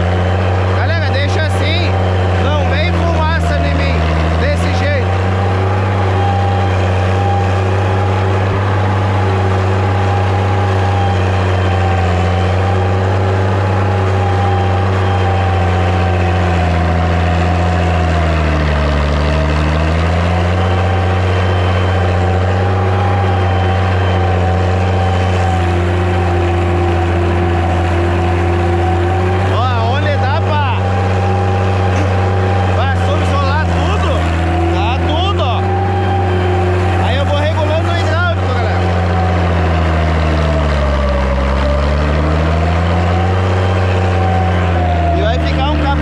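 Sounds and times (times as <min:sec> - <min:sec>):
tractor diesel engine running: 0:00.0 - 0:46.0.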